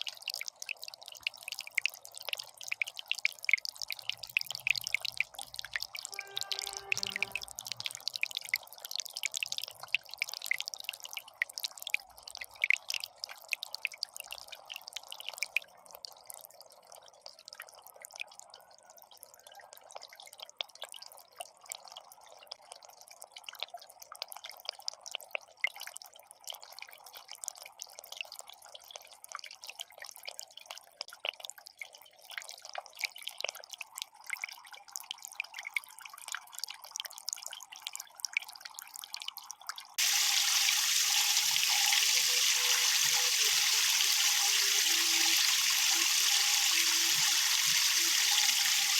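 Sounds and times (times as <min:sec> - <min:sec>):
water trickling into basin: 0:00.0 - 0:23.7, 0:40.0 - 0:48.9.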